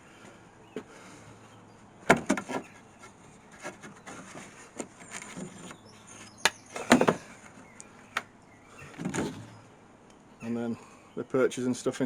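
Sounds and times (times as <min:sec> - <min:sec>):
wooden parts knocking and clattering: 0:06.5 - 0:07.3.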